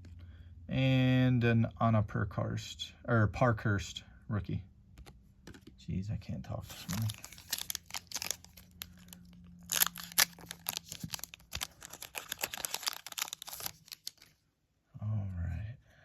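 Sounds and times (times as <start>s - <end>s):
foil wrapper tearing and crinkling: 6.7s - 14.3s.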